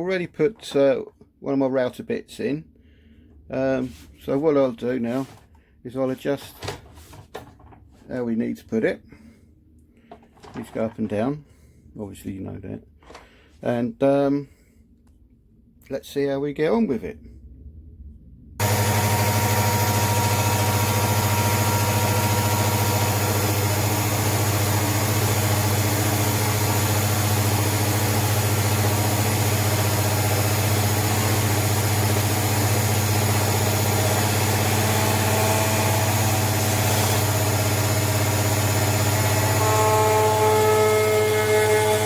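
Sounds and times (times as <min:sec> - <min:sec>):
router running at high speed: 0:18.6 - 0:42.0.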